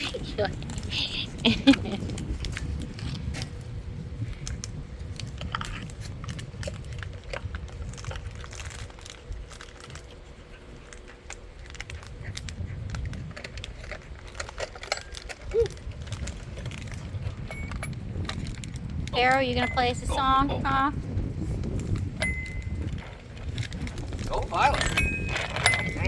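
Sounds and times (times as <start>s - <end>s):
dog chewing a toy: 5.2s - 20.5s, 21.4s - 26.0s.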